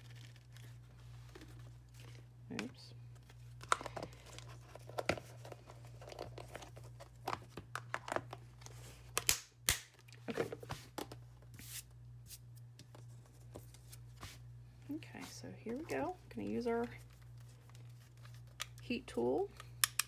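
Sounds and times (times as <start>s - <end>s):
paper crinkling and rustling: 0.0s - 2.3s, 3.0s - 9.0s, 16.7s - 18.6s.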